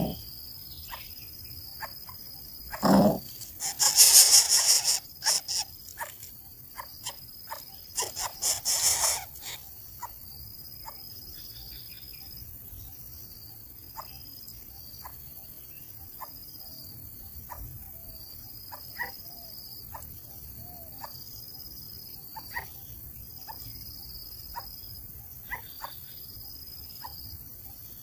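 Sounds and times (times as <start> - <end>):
nestling birds begging calls: 0.0 - 0.2, 2.6 - 10.2.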